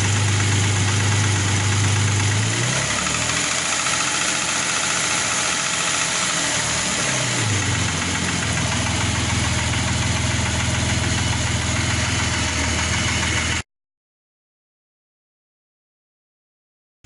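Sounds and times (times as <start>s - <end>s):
car engine idling with knock: 0.0s - 13.6s.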